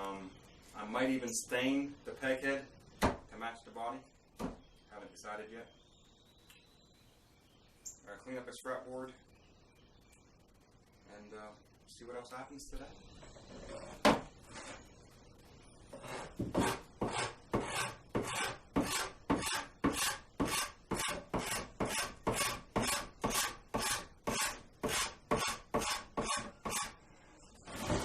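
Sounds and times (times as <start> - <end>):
wood being worked by hand: 15.9 - 27.0, 27.6 - 28.0.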